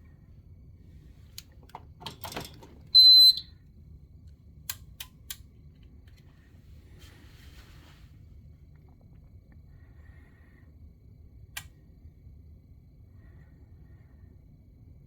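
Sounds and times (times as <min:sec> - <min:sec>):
alarm panel buzzer beep: 0:03.0 - 0:03.5.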